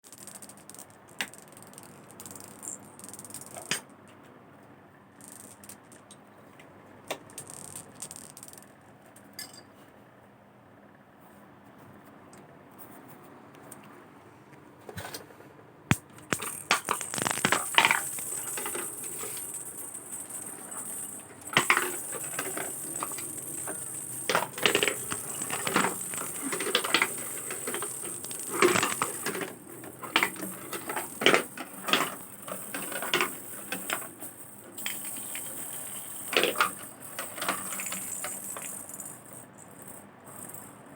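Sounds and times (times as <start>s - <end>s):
marbles clicking on hard surface: 0.0s - 3.9s, 5.2s - 6.2s, 7.1s - 9.3s, 16.2s - 40.7s.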